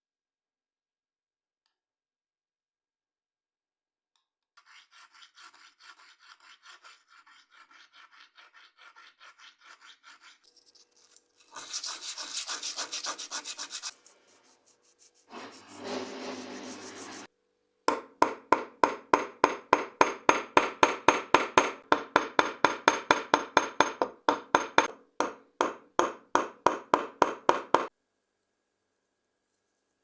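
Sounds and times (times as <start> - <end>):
rubbing: 4.7 - 17.3.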